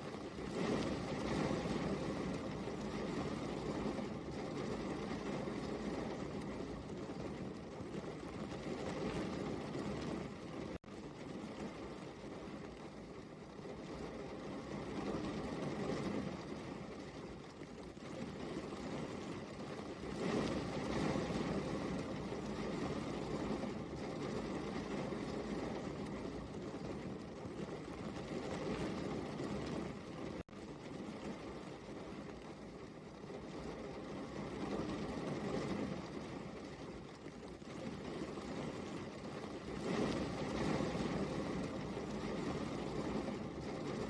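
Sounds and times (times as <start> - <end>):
steady rain hiss: 0.0 - 44.0.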